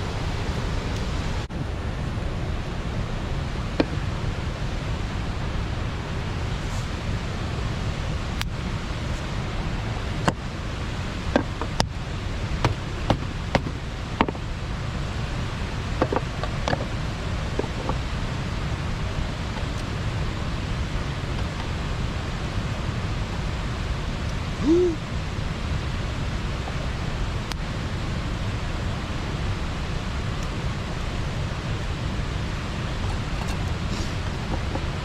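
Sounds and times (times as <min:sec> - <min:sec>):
water rushing over weir: 0:00.0 - 0:35.0.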